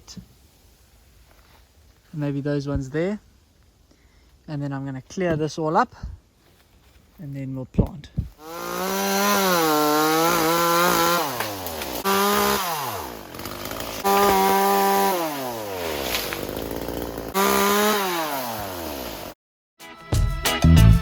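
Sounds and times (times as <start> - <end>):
chainsaw throttle bursts: 8.4 - 19.4.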